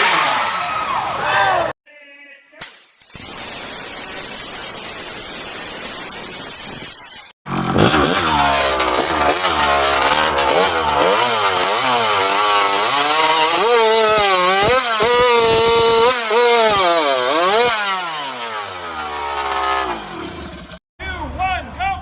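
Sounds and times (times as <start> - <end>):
chainsaw cutting through log: 7.5 - 20.8.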